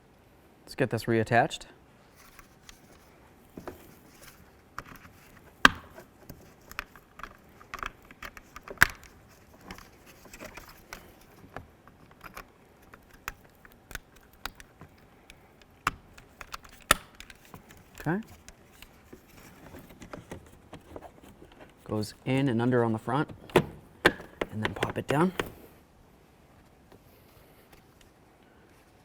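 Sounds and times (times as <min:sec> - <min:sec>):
clicks and taps of plastic trim: 0:04.8 - 0:21.7, 0:23.2 - 0:25.6.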